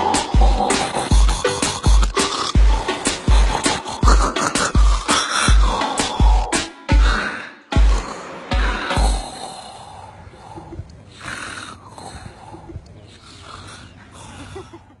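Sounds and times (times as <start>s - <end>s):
man snoring: 0.0s - 12.4s.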